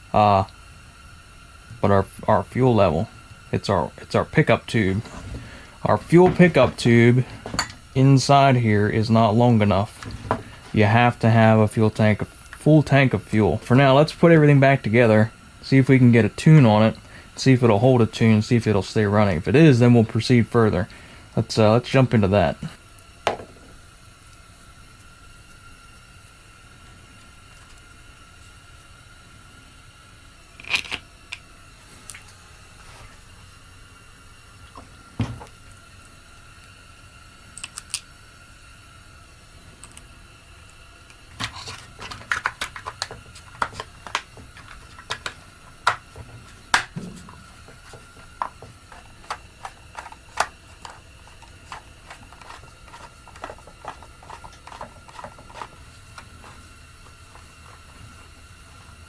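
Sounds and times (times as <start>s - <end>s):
tools clicking on a workbench: 41.4s - 56.6s
dull thump: 46.7s - 47.6s.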